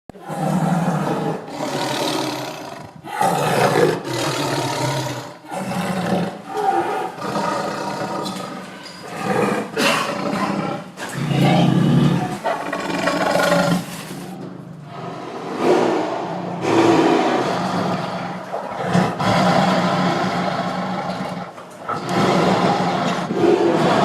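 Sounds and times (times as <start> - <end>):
tiger roaring and growling: 0.1 - 24.0.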